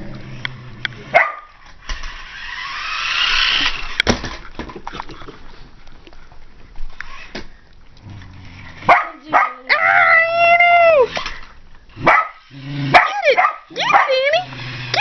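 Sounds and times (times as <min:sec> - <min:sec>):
dog barking: 0:01.1 - 0:01.5, 0:08.9 - 0:09.7, 0:12.0 - 0:14.4
dog howling: 0:09.3 - 0:11.1.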